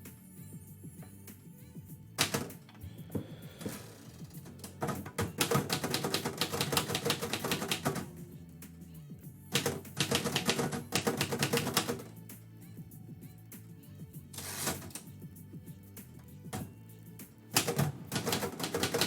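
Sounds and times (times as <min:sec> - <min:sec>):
typewriter keys striking: 0:02.2 - 0:02.6, 0:04.5 - 0:08.1, 0:09.5 - 0:12.1, 0:17.6 - 0:19.0.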